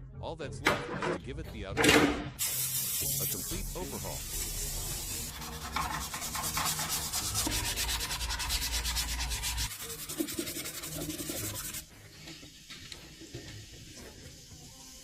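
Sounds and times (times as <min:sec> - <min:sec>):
abrasive rubbing on a surface: 0:04.9 - 0:11.9.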